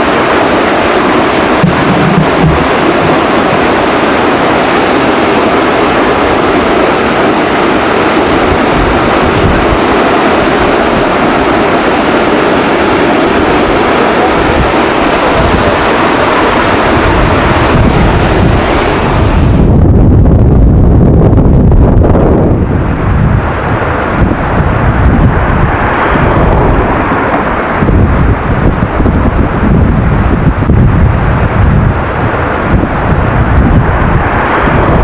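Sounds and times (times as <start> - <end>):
waterfall rushing: 0.0 - 19.7, 22.5 - 35.0
deep rumble: 1.1 - 4.3, 13.0 - 35.0.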